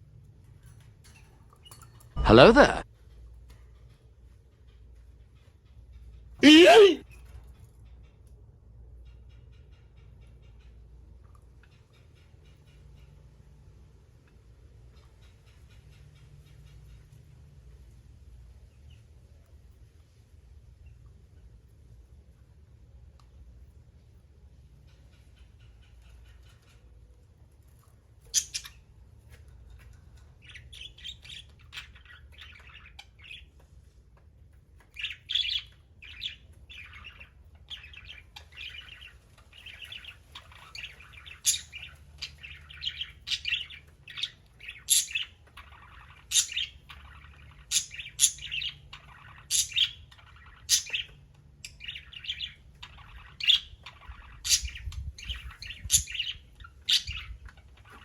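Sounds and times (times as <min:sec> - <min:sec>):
budgerigars chirping: 0:28.3 - 0:28.8, 0:35.0 - 0:58.0.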